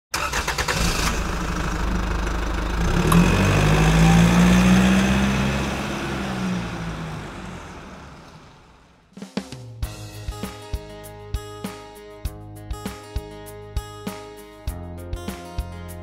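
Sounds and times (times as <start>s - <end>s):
car engine revving: 0.2s - 8.9s.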